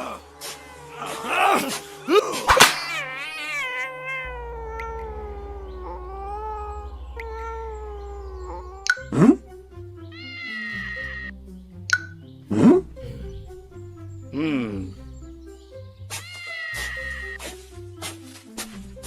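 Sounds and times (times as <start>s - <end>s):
kitten meowing: 2.8s - 9.0s, 10.1s - 11.3s.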